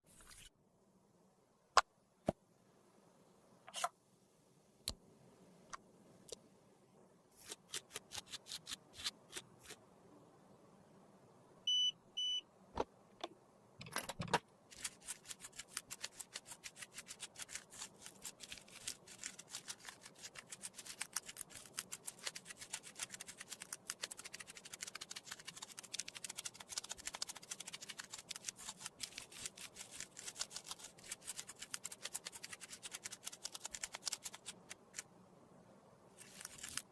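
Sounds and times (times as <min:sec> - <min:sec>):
short electronic beeps: 0:11.7 - 0:12.4.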